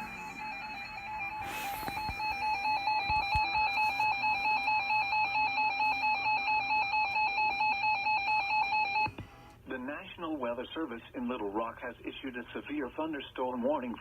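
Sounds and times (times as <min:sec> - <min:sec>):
warbling electronic alert tone: 0:00.0 - 0:04.1.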